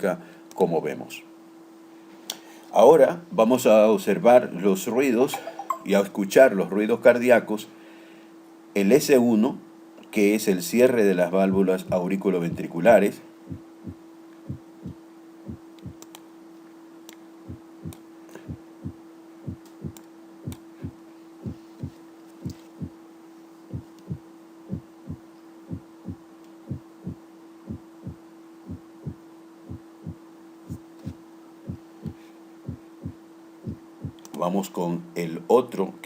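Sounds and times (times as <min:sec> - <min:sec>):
steady hum: 0:00.0 - 0:36.0
heartbeat thumps: 0:11.5 - 0:12.7, 0:13.5 - 0:16.0, 0:17.5 - 0:23.0, 0:23.7 - 0:34.2.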